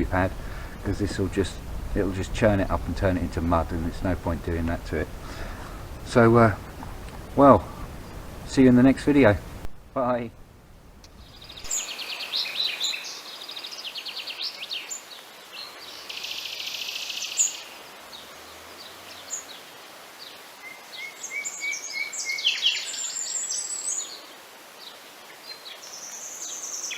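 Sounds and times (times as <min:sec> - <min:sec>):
birds singing and chirping: 0:00.0 - 0:09.6, 0:11.1 - 0:19.6, 0:20.2 - 0:24.2
faint background hiss: 0:00.0 - 0:26.9.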